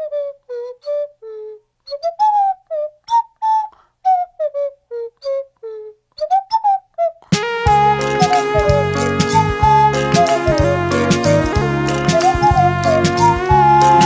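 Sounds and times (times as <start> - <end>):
whistle-like melody: 1.9 - 4.6, 6.2 - 14.0.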